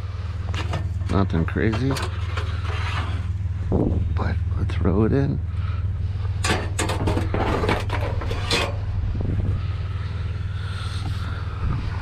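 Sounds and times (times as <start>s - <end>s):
vehicle engine idling: 0.0s - 12.0s
scrap metal clanking and scraping: 0.4s - 3.5s, 6.2s - 9.0s.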